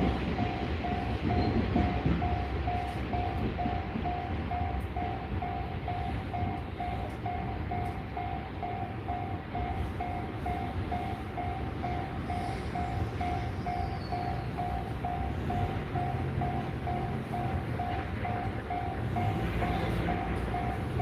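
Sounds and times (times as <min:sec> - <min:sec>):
level crossing bell ringing: 0:01.9 - 0:21.0.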